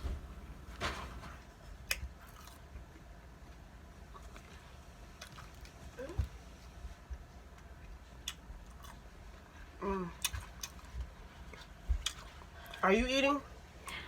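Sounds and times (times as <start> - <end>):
person chewing: 1.9 - 3.1, 4.0 - 6.2, 7.5 - 12.8.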